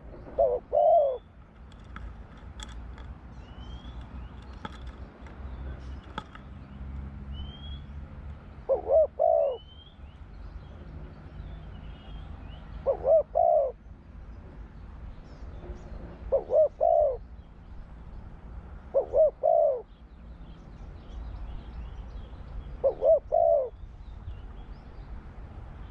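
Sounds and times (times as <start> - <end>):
dove cooing: 0.0 - 2.8, 8.6 - 9.8, 12.8 - 13.8, 15.7 - 17.2, 18.9 - 19.9, 22.8 - 23.8.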